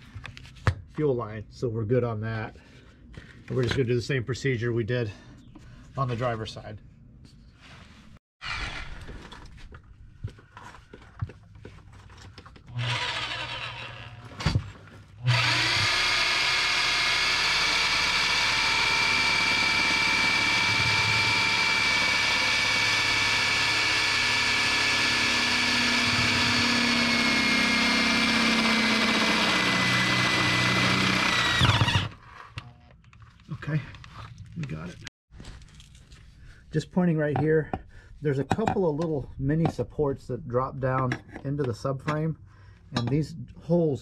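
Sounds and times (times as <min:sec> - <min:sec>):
power drill boring through metal: 0:08.4 - 0:09.1, 0:12.7 - 0:14.3, 0:15.2 - 0:32.3.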